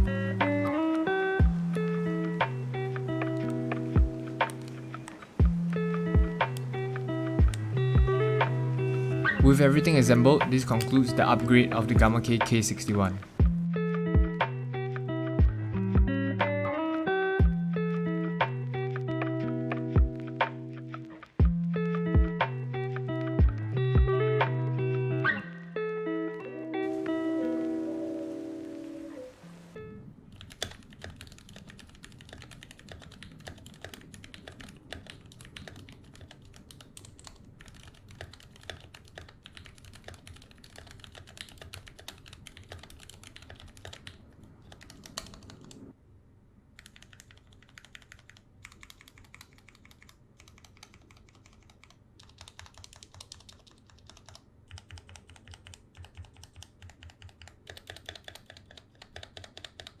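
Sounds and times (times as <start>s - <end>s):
mechanical keyboard key clacks: 46.8s - 60.0s.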